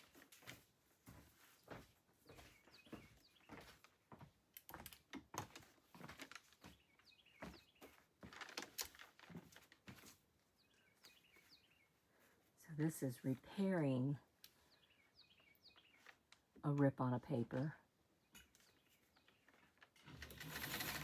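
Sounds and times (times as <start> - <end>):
craft materials clicking and rustling: 8.2 - 9.8.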